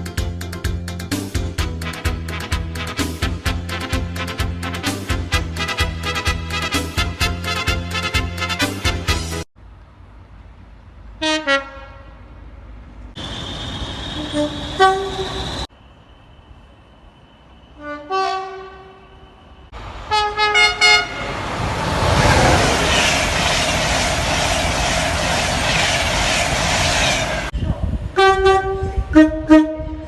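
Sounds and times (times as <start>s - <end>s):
train horn two-tone blasts: 1.9s - 8.7s, 11.2s - 12.3s, 13.2s - 15.7s, 17.7s - 19.3s, 20.1s - 21.3s, 28.2s - 30.0s
train rushing past: 12.4s - 29.1s.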